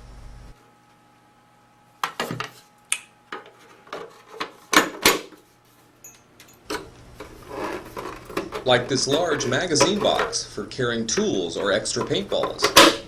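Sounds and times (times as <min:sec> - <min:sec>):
parts clicking and knocking: 0:06.0 - 0:13.0.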